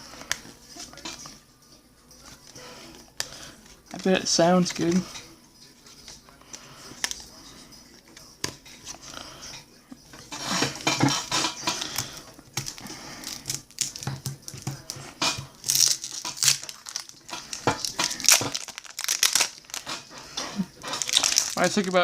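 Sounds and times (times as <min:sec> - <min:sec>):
cards being handled: 0:05.7 - 0:09.1, 0:11.7 - 0:20.0, 0:20.9 - 0:22.0
card pack wrappers crinkling: 0:11.8 - 0:15.0, 0:15.6 - 0:22.0.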